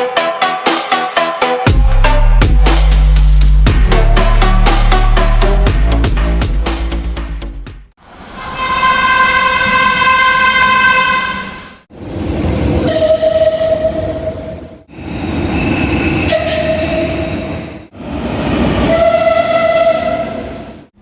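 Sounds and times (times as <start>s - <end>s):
train horn blasts: 8.3s - 11.8s, 12.9s - 14.6s, 16.3s - 17.5s, 18.8s - 20.7s
running train rumble: 11.9s - 21.0s.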